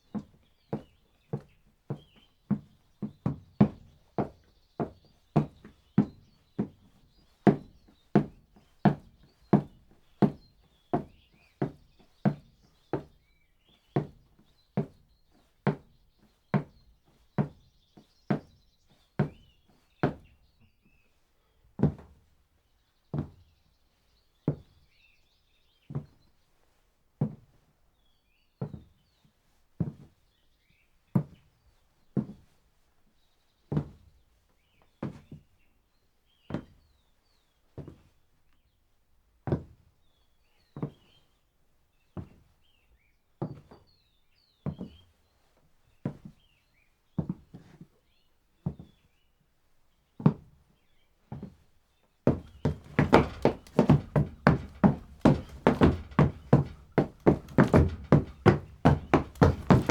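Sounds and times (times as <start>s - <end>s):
footsteps: 52.3s - 59.9s.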